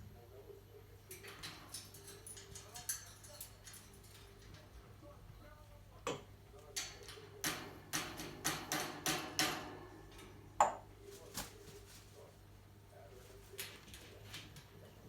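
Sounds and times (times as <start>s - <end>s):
parrot knocking on cage: 6.1s - 11.6s.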